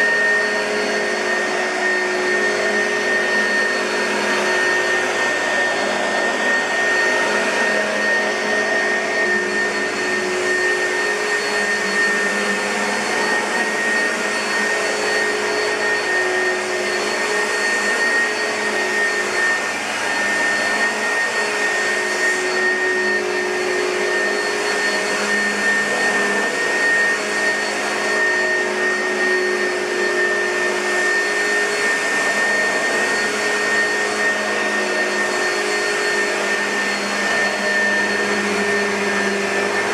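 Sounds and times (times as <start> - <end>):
vacuum cleaner motor whine: 0.0 - 39.9.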